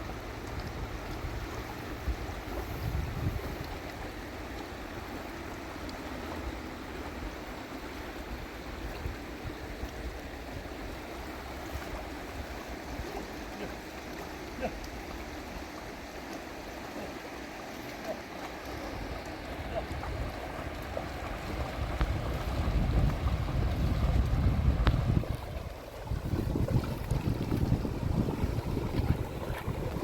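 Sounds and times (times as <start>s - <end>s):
river water running: 0.0s - 30.0s.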